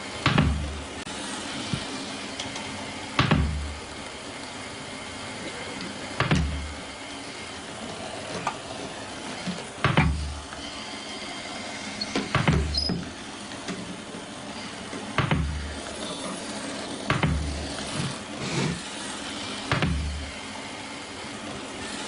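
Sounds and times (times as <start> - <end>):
dull knock of vacuum bumping: 0.2 - 0.8, 3.2 - 3.8, 6.2 - 6.7, 9.8 - 10.4, 15.2 - 15.7, 17.1 - 17.6, 19.7 - 20.3
robot vacuum whirring: 5.5 - 22.0.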